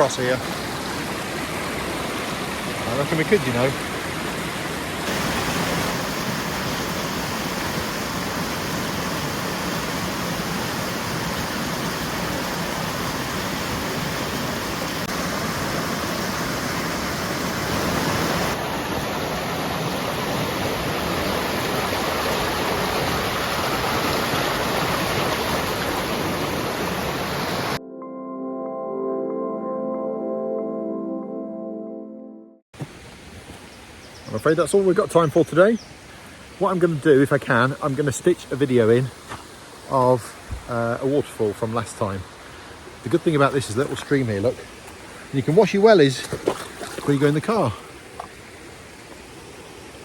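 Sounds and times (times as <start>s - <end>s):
stream rushing: 0.0s - 27.8s, 32.8s - 50.0s.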